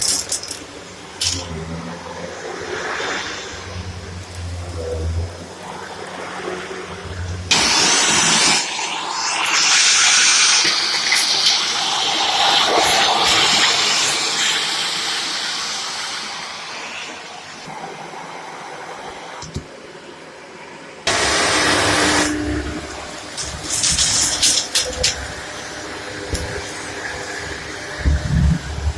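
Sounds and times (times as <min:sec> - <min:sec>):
vacuum cleaner suction hiss: 0:07.5 - 0:19.7, 0:21.1 - 0:28.9.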